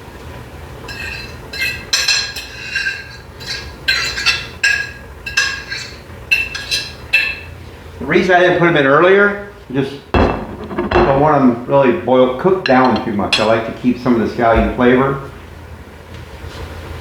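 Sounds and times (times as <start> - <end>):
utensil clinking on metal pot: 0.9 - 7.5.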